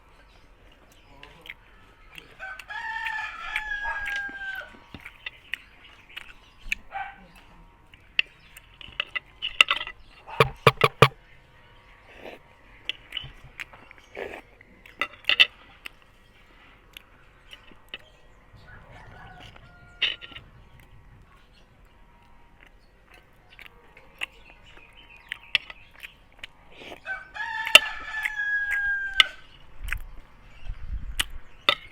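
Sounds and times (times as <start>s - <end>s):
eating clicks and smacks: 0.6s - 11.2s, 12.2s - 18.2s, 22.2s - 31.9s
rooster crowing: 2.4s - 4.8s, 18.5s - 20.7s, 27.0s - 29.4s.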